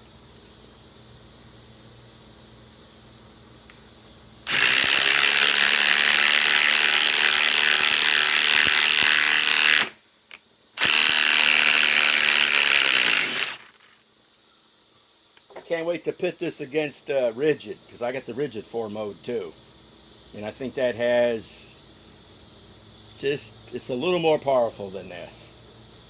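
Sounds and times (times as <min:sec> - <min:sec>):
impact wrench hammering: 0:04.5 - 0:09.9, 0:10.8 - 0:13.9.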